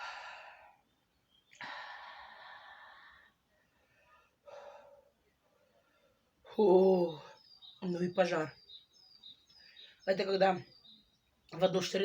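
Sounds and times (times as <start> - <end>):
woman breathing out: 0.0 - 0.8.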